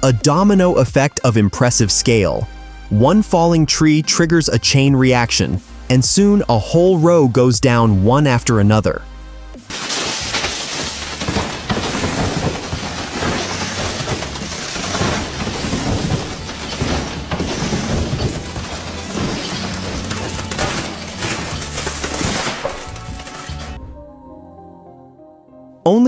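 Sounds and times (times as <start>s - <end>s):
background music: 0.0s - 26.0s
branches cracking: 9.6s - 23.8s
tree trunks crashing down: 9.6s - 24.0s.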